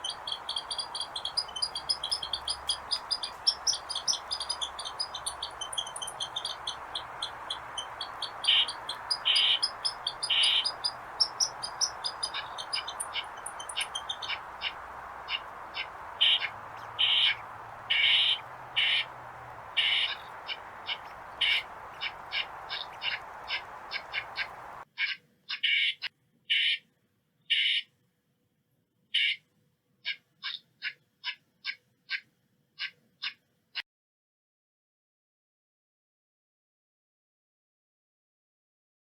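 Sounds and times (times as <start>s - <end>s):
squirrel alarm chirps: 0.0s - 24.8s
steady background hiss: 0.0s - 24.8s.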